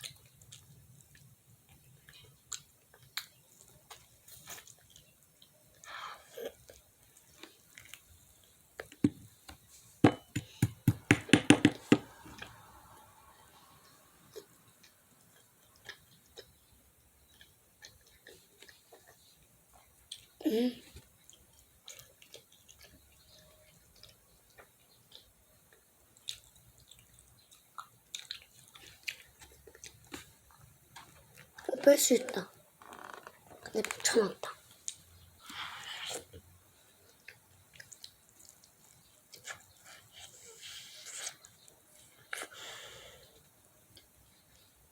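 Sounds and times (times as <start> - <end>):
chewing crunchy fried chicken: 0.0 - 9.0, 13.8 - 31.7, 33.4 - 44.9
sharp knocks and clatters: 10.0 - 12.1.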